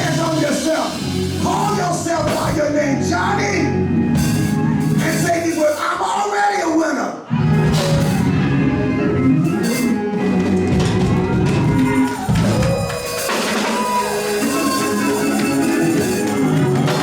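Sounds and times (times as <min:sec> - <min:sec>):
drums and percussion: 0:00.0 - 0:02.8, 0:04.1 - 0:05.8, 0:07.5 - 0:08.4, 0:09.4 - 0:17.0
church band playing gospel: 0:00.0 - 0:06.2, 0:07.2 - 0:17.0.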